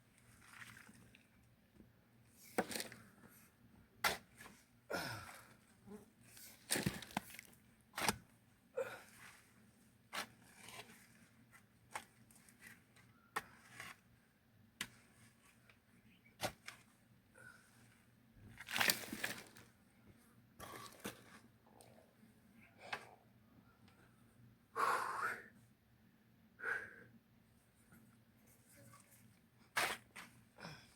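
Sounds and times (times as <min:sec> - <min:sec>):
soil scraping: 0:02.3 - 0:03.4, 0:04.0 - 0:14.1, 0:14.8 - 0:19.8, 0:28.5 - 0:30.9.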